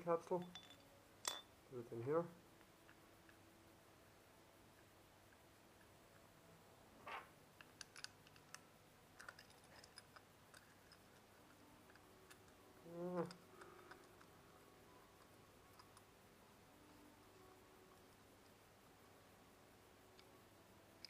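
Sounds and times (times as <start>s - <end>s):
metal magazine clicks and taps: 0.4s - 1.5s, 7.6s - 8.6s.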